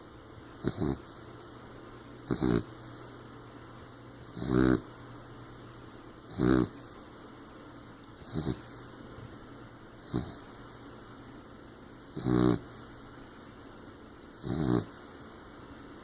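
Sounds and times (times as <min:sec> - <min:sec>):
puppy snoring and snorting: 0:00.6 - 0:01.3, 0:02.2 - 0:03.0, 0:04.2 - 0:05.1, 0:06.2 - 0:07.0, 0:08.2 - 0:08.9, 0:10.0 - 0:10.7, 0:12.0 - 0:13.0, 0:14.3 - 0:15.1.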